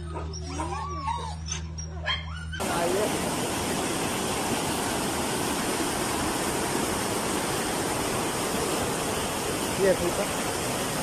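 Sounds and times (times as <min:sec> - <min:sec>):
rushing floodwater: 0:02.6 - 0:11.0.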